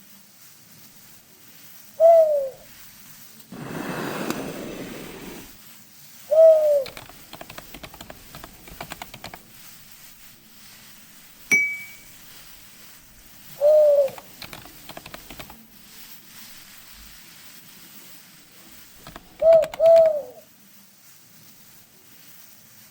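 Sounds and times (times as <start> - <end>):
falling dove-like coos: 2.0 - 2.8, 6.3 - 7.1, 13.4 - 14.4, 19.1 - 20.4
rapid clicking: 6.8 - 11.5, 14.0 - 16.9, 18.6 - 20.3
sharp strike with ringing ding: 11.5 - 12.1.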